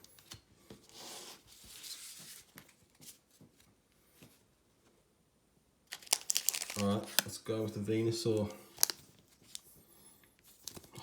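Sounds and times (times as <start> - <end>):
trading cards rustling and sliding: 5.9 - 9.8.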